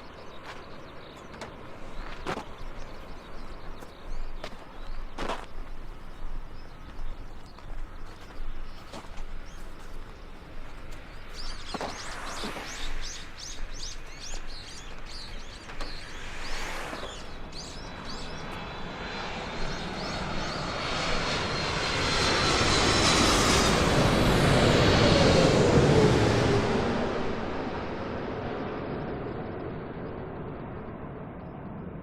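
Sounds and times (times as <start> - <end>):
small birds chirping: 0.0 - 25.4
aircraft engine whine overhead: 0.0 - 32.0.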